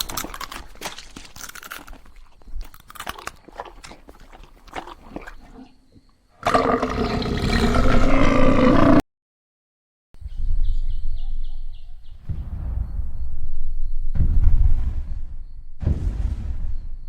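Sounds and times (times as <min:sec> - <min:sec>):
loud animal-like roar: 0:06.4 - 0:09.0
low rumble: 0:12.0 - 0:17.0.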